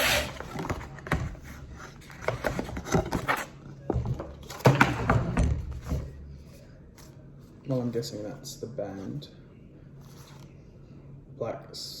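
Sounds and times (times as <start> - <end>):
packaging rustling and scraping: 0.0 - 3.7.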